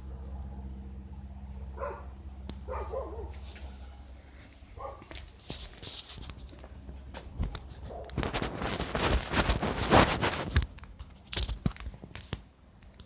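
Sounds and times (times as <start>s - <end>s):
rustling and scraping: 2.6s - 13.0s.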